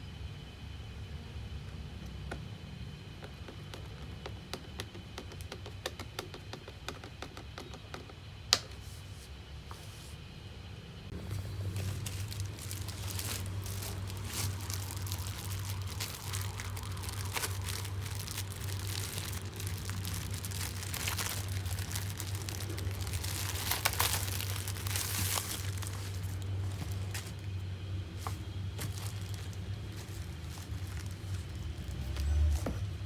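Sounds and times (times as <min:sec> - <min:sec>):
steady low hum: 0:00.0 - 0:33.0
plastic packaging crinkling: 0:11.1 - 0:27.6, 0:28.2 - 0:33.0.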